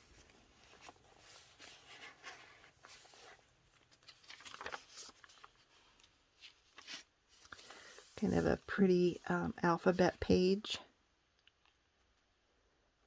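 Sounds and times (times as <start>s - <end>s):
paper pages rustling: 0.0s - 9.2s.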